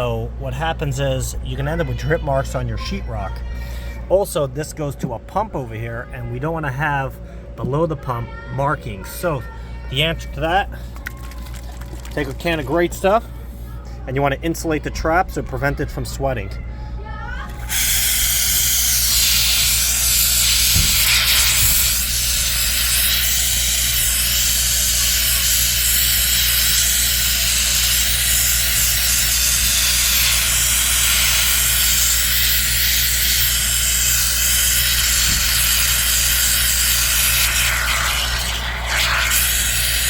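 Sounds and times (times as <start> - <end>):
steady low hum: 0.0 - 40.0
spray foam can hissing: 17.7 - 40.0.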